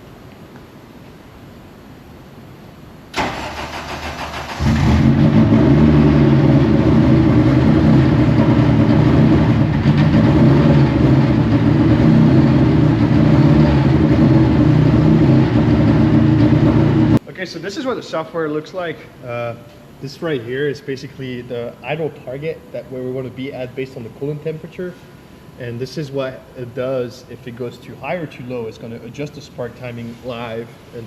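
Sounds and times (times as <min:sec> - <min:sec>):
engine starter cranking: 0:03.2 - 0:06.1
race car engine running loudly: 0:04.5 - 0:17.2.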